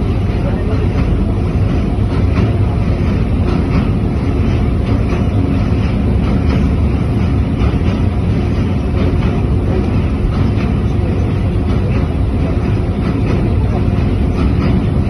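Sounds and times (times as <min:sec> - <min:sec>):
train rumbling: 0:00.0 - 0:15.0.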